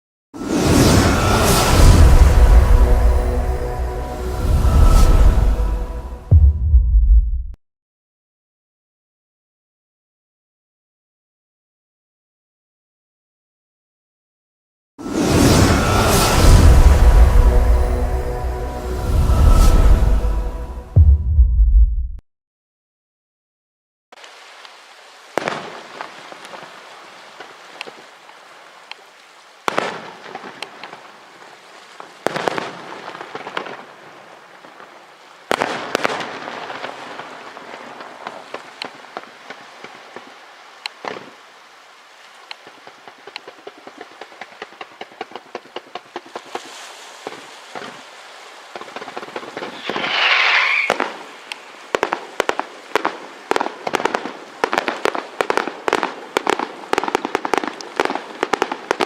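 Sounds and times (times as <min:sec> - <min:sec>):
rapid small firework pops: 0:25.3 - 0:26.7, 0:29.6 - 0:31.0, 0:32.2 - 0:33.9, 0:35.5 - 0:41.4, 0:42.4 - 0:48.0, 0:48.7 - 0:59.0
firework barrage of sharp bangs: 0:35.5 - 0:38.7, 0:48.8 - 0:59.0
firework shell bursts with crackling: 0:48.8 - 0:59.0.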